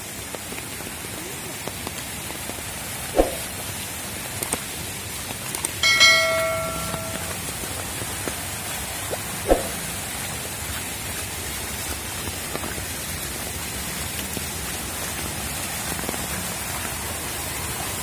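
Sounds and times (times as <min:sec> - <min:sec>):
rushing water hiss: 0:00.0 - 0:18.0
ringing bell-like tone: 0:05.8 - 0:07.7.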